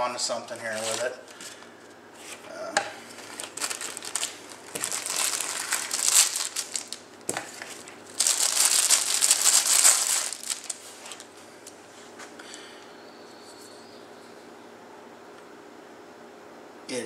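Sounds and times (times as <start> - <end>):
packaging crinkling and rustling: 0.4 - 11.4.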